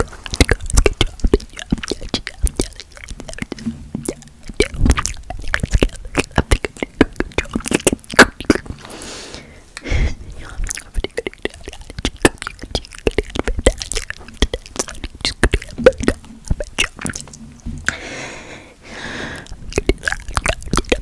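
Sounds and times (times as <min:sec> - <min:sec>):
wet mouth clicks and lip smacks: 0:00.0 - 0:08.8, 0:10.4 - 0:18.0, 0:19.4 - 0:21.0
breathy hiss: 0:08.8 - 0:10.0, 0:17.9 - 0:19.5
whispered gibberish syllables: 0:10.3 - 0:17.4.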